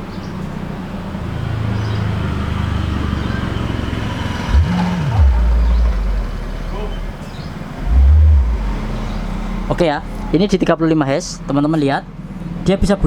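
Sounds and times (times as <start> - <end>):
subwoofer low test tone: 4.5 - 11.0.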